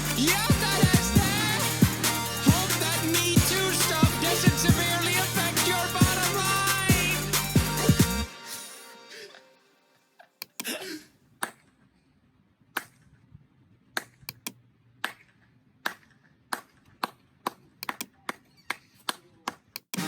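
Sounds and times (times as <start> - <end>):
sharp clicks: 14.3 - 14.6, 17.8 - 18.2.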